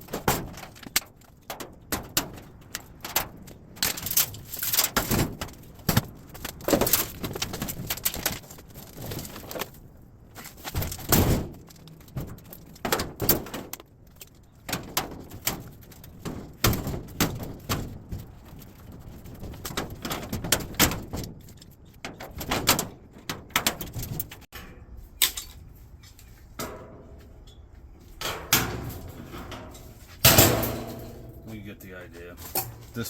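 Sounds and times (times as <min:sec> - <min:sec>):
sheet metal clanking and rattling: 0:00.0 - 0:09.7, 0:28.2 - 0:33.0
loud metal bangs: 0:28.3 - 0:33.0.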